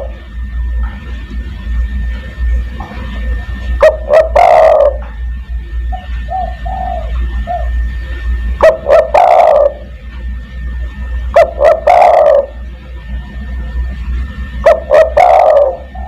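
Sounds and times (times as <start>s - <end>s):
steady low hum: 0.0s - 16.0s
dove cooing: 3.8s - 5.2s, 5.9s - 9.9s, 11.4s - 12.7s, 14.6s - 16.0s.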